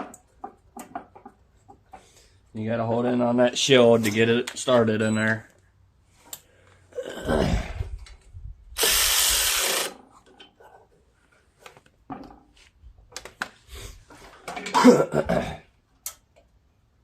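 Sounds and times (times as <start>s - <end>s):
loud hiss: 8.8s - 9.9s.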